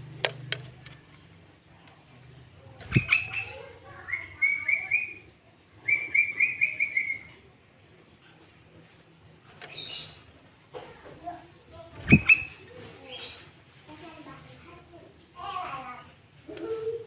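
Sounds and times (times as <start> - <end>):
bird chirping song: 2.8 - 7.4, 12.0 - 13.4.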